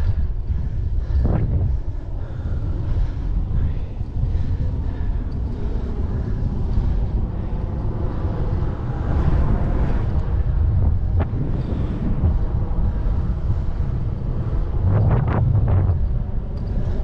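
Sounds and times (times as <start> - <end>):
bicycle tyre and road noise: 0.0 - 17.0
wind rumbling on microphone: 0.0 - 17.0.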